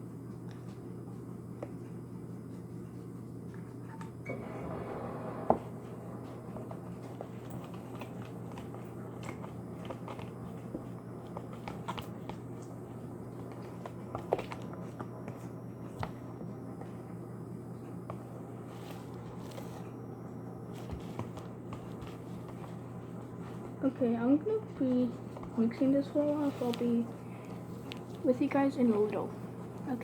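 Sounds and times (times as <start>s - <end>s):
faint steady hum: 0.0s - 30.0s
sticky squishing of stirred paint: 6.6s - 17.0s, 20.7s - 30.0s.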